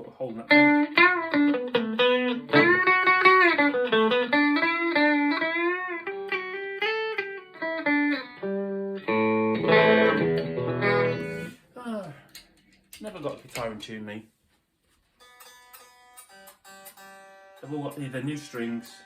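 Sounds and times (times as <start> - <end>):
electric guitar lead and chords: 0.5 - 11.6.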